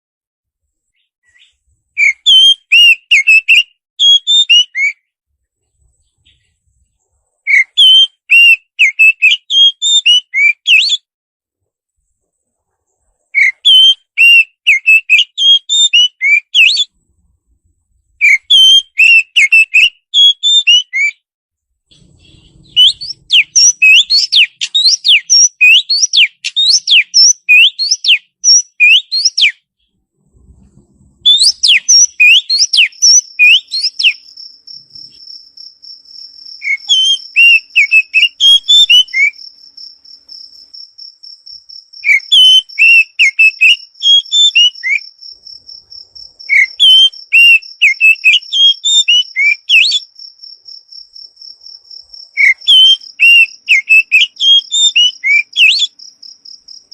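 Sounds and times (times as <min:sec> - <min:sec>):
songbird whistling: 0:00.9 - 0:05.1, 0:07.4 - 0:11.1, 0:13.3 - 0:17.0, 0:18.2 - 0:21.2, 0:21.9 - 0:30.0, 0:31.2 - 0:34.4, 0:36.6 - 0:39.4, 0:42.0 - 0:45.2, 0:46.5 - 0:50.1, 0:52.4 - 0:56.0.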